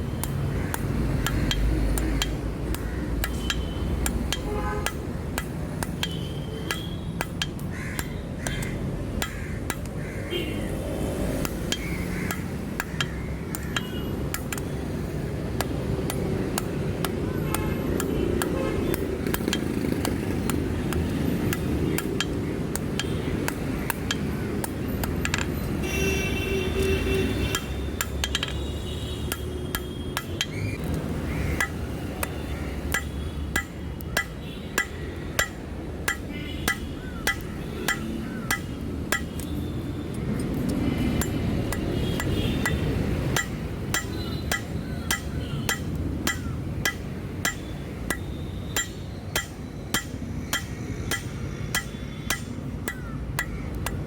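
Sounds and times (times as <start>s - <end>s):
hammer striking steel anvil: 27.5s - 28.6s, 31.6s - 39.4s, 41.1s - 54.0s.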